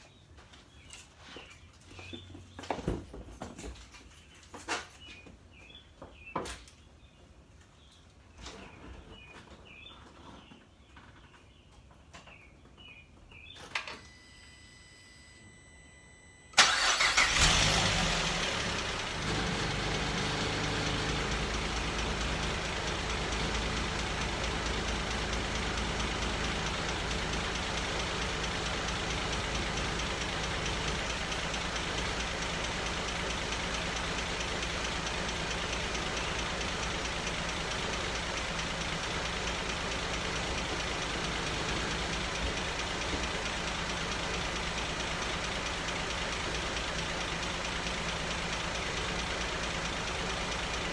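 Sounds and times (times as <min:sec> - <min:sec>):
car engine starting and idling: 0:16.5 - 0:50.9.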